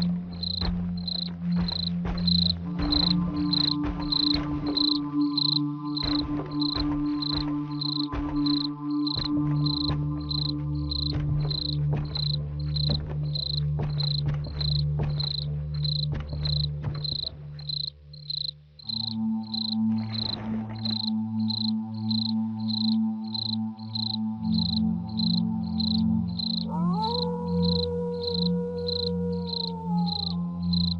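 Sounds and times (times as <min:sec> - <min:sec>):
high cricket-like chirp: 0:00.4 - 0:30.9.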